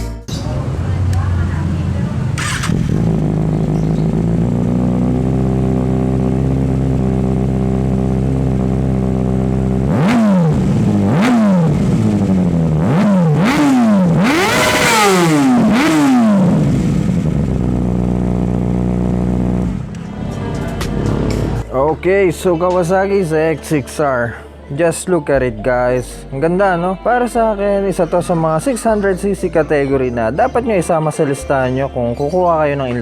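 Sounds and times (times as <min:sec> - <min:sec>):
motorcycle engine idling: 0:00.3 - 0:21.6
motorcycle engine revving: 0:00.4 - 0:21.7.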